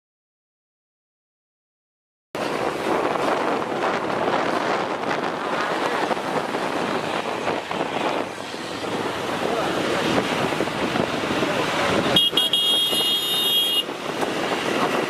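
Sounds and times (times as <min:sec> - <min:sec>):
wind buffeting microphone: 0:02.4 - 0:15.0.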